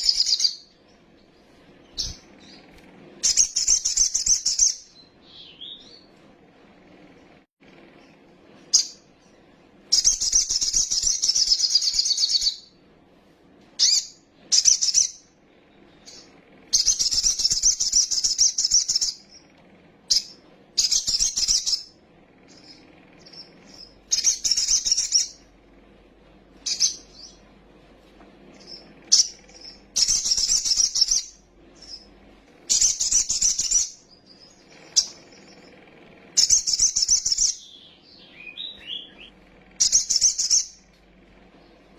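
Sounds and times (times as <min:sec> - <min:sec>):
bird singing fast chattering song: 0:00.0 - 0:00.7, 0:01.8 - 0:06.1, 0:09.9 - 0:12.7, 0:13.8 - 0:15.3, 0:15.9 - 0:19.5, 0:20.1 - 0:25.5, 0:26.6 - 0:27.4, 0:28.6 - 0:32.1, 0:32.7 - 0:40.9.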